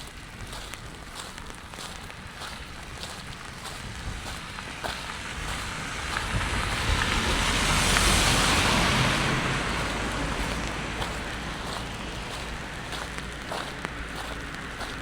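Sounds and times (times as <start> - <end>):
car tyres hissing on wet road: 0.0 - 15.0.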